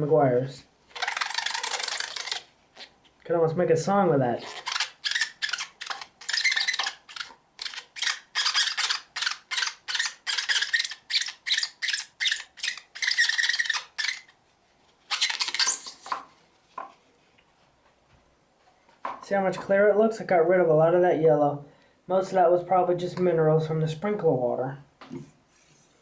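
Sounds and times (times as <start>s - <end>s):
cloth squeaking on plastic: 0.9s - 3.0s, 4.3s - 14.4s, 15.0s - 16.2s.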